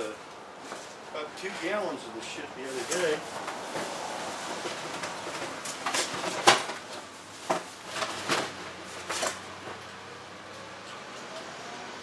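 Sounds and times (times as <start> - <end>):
hard objects knocking and clattering: 4.5 - 9.8.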